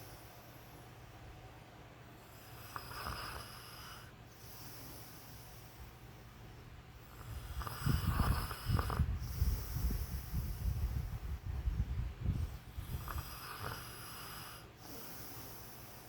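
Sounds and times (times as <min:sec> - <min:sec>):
man snoring: 0:02.5 - 0:05.0, 0:07.1 - 0:10.4, 0:12.7 - 0:15.6.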